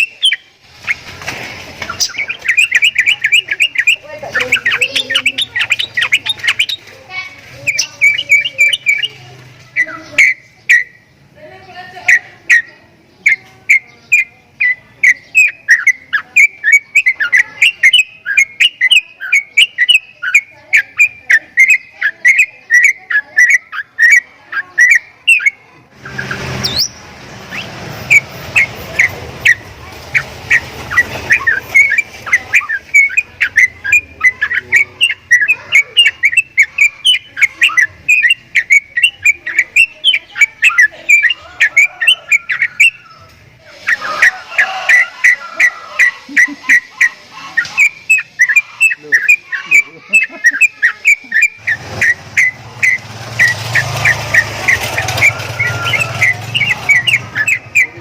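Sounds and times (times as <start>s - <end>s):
bird whistled call: 0.0s - 1.0s, 2.0s - 6.8s, 13.3s - 24.2s, 30.5s - 58.0s.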